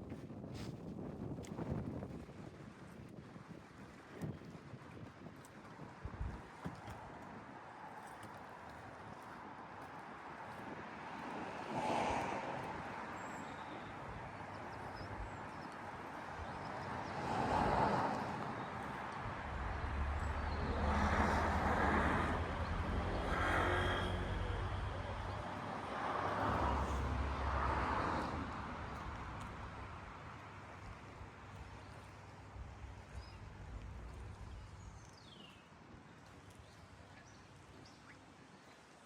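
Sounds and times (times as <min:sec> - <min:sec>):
cars passing by: 0:09.4 - 0:31.7.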